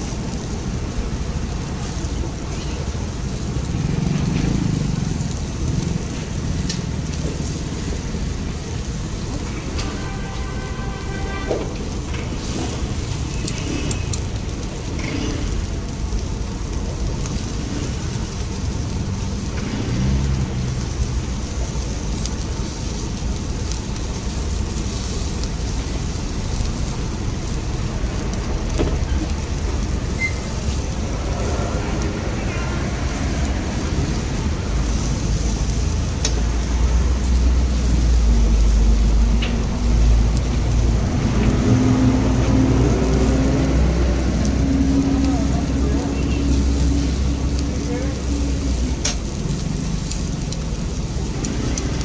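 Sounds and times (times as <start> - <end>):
meat sizzling on grill: 0.0 - 52.0
low rumble: 25.5 - 52.0.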